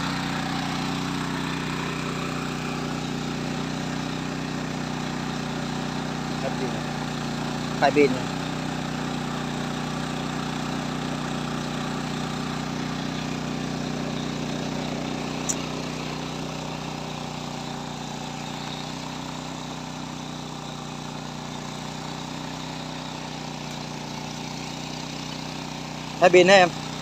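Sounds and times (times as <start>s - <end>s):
motor humming: 0.0s - 27.0s
sharp click: 15.4s - 15.7s.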